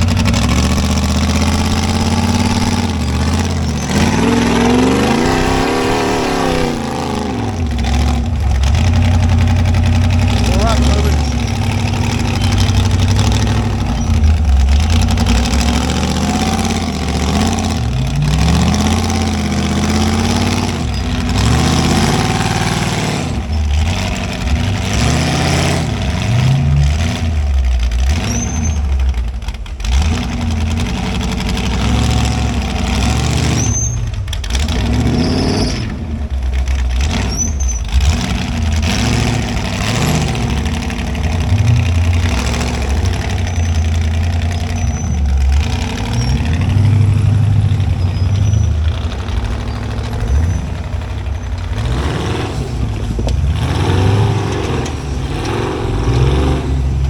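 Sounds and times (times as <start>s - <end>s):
high squeaks: 0.0s - 22.6s, 28.2s - 29.1s, 33.4s - 36.0s, 36.6s - 52.0s
engine revving: 0.0s - 57.0s.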